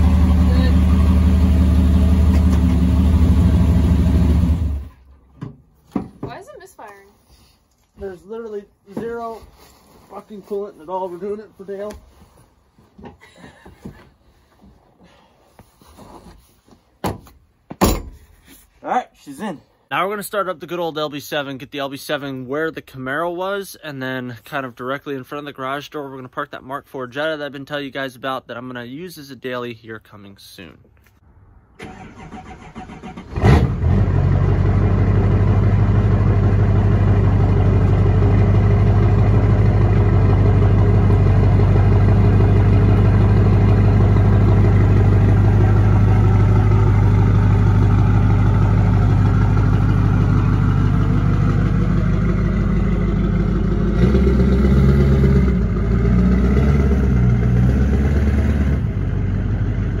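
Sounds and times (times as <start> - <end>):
diesel engine idling: 0.0 - 5.0, 31.8 - 60.0
diesel engine starting: 0.0 - 5.1, 31.7 - 60.0.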